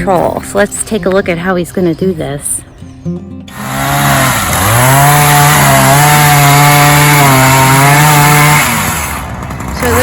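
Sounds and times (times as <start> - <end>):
chainsaw cutting wood: 3.5 - 10.0.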